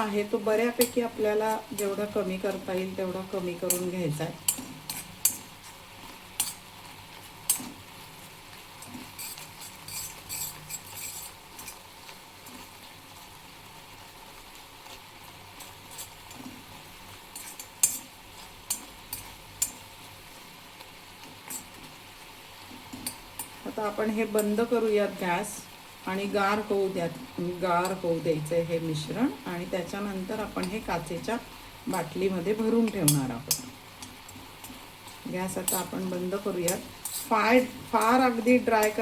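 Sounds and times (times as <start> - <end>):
faint sizzle: 0.0 - 39.0
spoon scraping a pan: 3.5 - 12.8, 14.8 - 19.9, 21.3 - 22.0, 22.6 - 23.7, 31.9 - 39.0.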